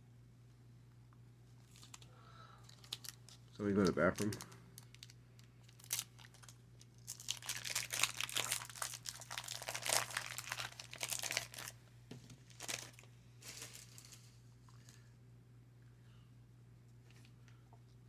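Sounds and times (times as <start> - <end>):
card pack wrapper crinkling: 1.6 - 2.1, 2.7 - 11.8, 12.5 - 14.3.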